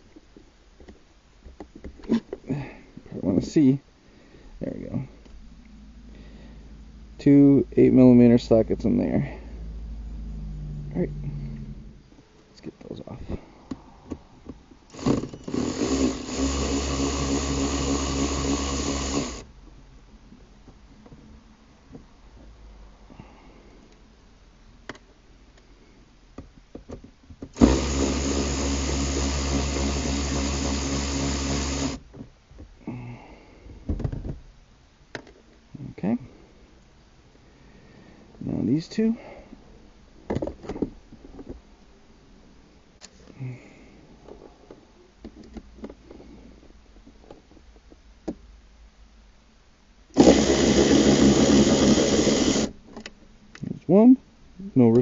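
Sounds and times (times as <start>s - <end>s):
handheld power tool running: 14.9s - 19.5s, 27.5s - 32.0s, 50.2s - 52.8s.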